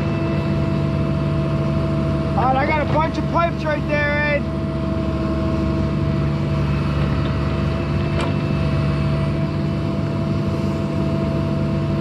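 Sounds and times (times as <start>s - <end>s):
diesel engine running: 0.0s - 12.0s.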